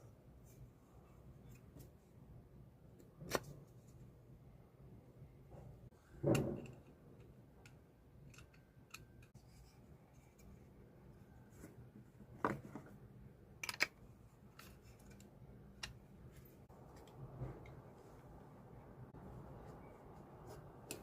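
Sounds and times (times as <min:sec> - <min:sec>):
small parts clicking and tapping: 0:06.3 - 0:09.4, 0:13.6 - 0:16.0.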